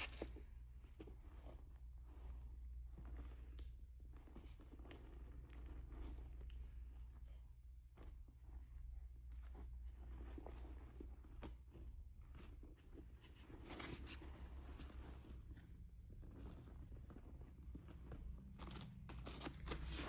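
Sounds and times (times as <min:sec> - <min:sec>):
packaging rustling: 0:18.5 - 0:20.0.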